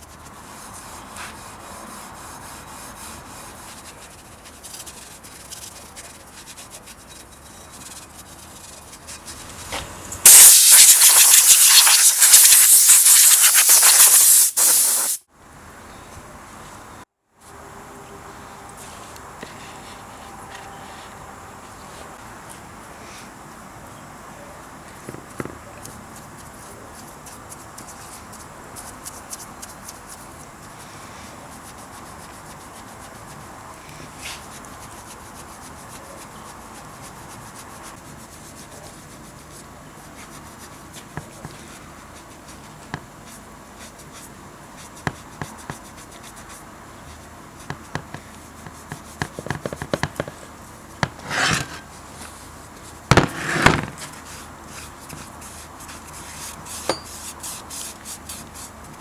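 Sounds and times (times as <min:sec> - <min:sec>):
faint steady hiss: 0:09.1 - 0:27.0
short rasping bursts: 0:09.2 - 0:15.2.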